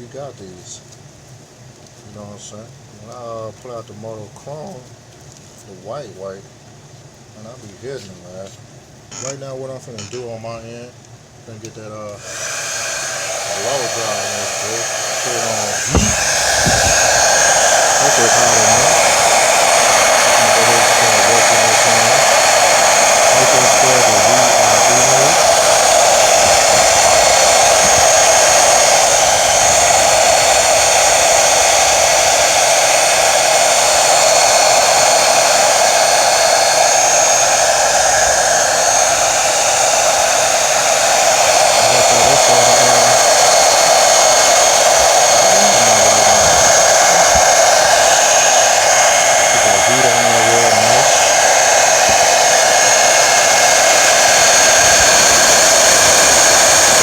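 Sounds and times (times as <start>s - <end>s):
blow dryer running: 12.2s - 57.0s.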